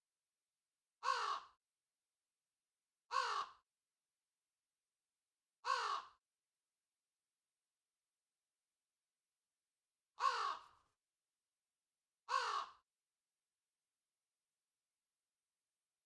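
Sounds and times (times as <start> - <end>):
crow cawing: 1.0 - 1.6, 3.1 - 3.6, 5.6 - 6.2, 10.2 - 10.9, 12.3 - 12.9.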